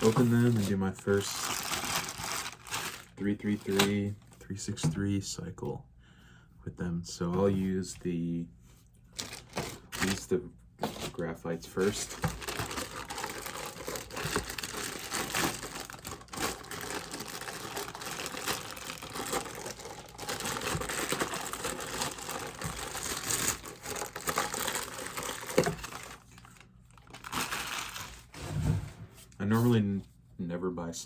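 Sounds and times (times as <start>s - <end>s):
plastic packaging crinkling and tearing: 0.0s - 3.9s, 9.2s - 10.3s, 11.8s - 28.4s.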